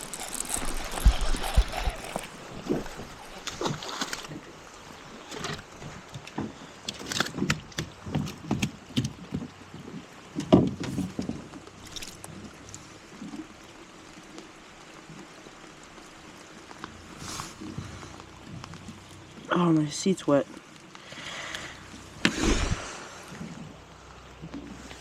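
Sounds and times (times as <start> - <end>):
knocks and clunks in a boat: 2.6 - 12.2.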